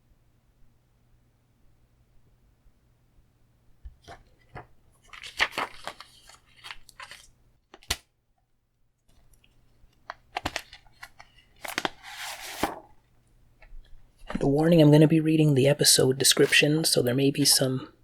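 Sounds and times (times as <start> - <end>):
packaging crinkly rustling: 4.1 - 8.0, 10.0 - 13.1.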